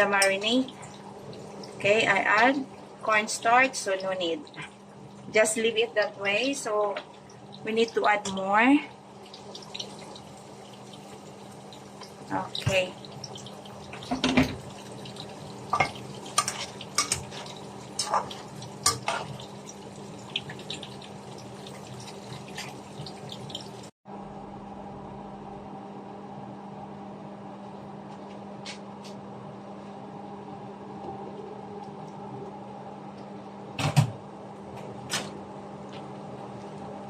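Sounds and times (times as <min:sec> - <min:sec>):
frying hiss: 0:00.0 - 0:23.9.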